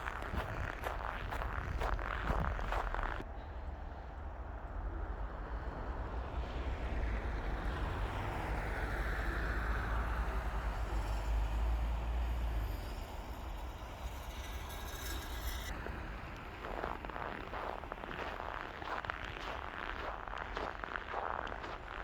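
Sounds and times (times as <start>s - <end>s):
vehicle tyres on snowy road: 0.0s - 3.2s, 4.8s - 22.0s
wind rumble on microphone: 0.0s - 3.2s.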